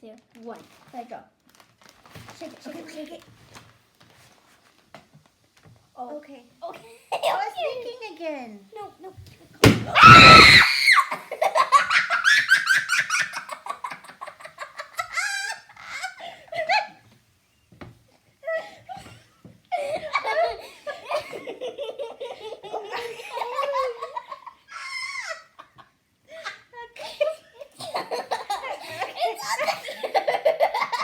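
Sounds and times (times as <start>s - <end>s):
bag bursting: 9.6s - 10.9s
people laughing hard: 19.8s - 25.8s.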